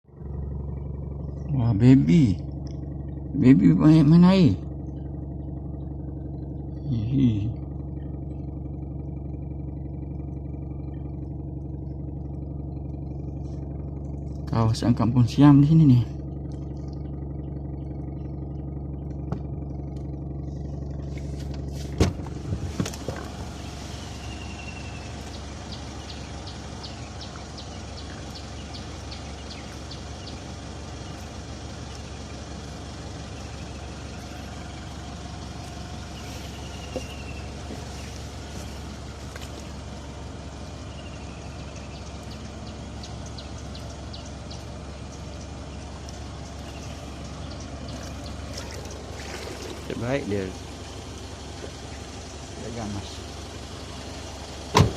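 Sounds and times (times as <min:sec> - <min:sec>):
engine and road drone: 0:00.0 - 0:54.9
bird chirps: 0:23.5 - 0:40.0, 0:40.6 - 0:51.0.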